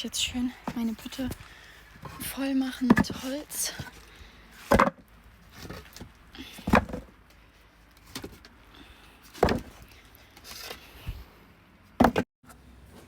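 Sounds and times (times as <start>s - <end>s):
firewood logs knocking: 4.6s - 5.0s, 5.6s - 7.1s, 9.4s - 9.8s.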